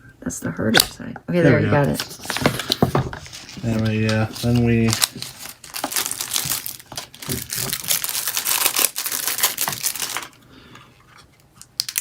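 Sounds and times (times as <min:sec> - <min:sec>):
packaging crinkling and rustling: 0:01.8 - 0:10.4, 0:11.0 - 0:12.0.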